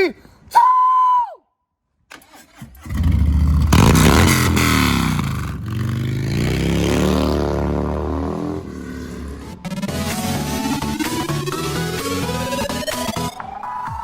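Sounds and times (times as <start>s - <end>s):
starter cranking clicks: 2.1s - 4.1s
motorcycle engine starting: 2.1s - 12.8s.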